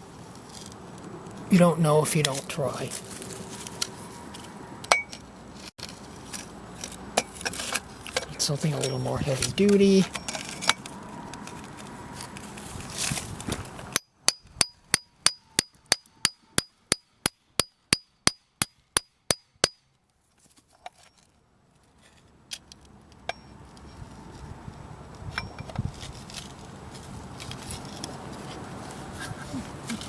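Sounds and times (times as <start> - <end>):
hammer tapping on metal: 4.9 - 5.1.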